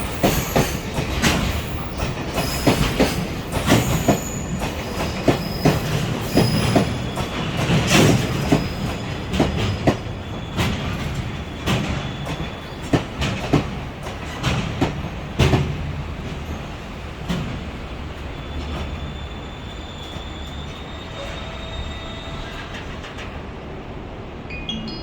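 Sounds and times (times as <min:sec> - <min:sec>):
train wheels clacking over rail joints: 0:00.0 - 0:18.9.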